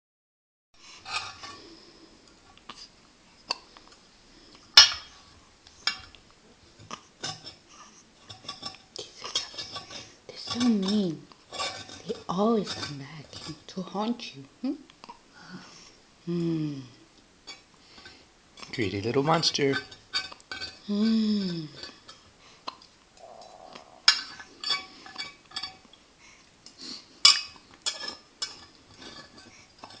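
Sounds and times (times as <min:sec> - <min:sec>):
cutlery clinking against dish: 0:08.3 - 0:13.6, 0:24.1 - 0:25.8, 0:27.3 - 0:30.0.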